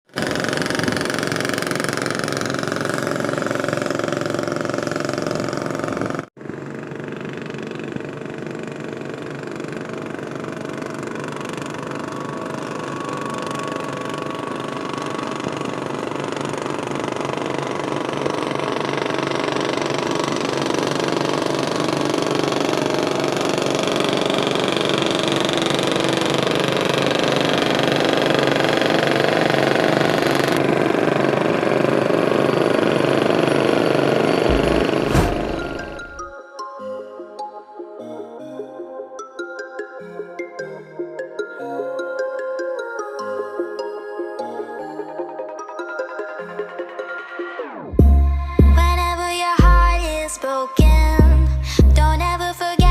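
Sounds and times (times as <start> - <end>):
boat engine running: 0.1 - 36.3, 48.0 - 52.9.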